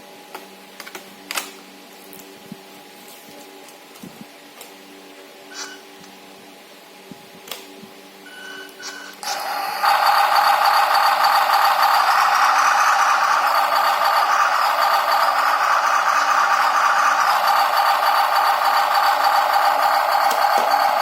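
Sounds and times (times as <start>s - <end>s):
simulated engine sound from speaker: 9.2s - 21.0s.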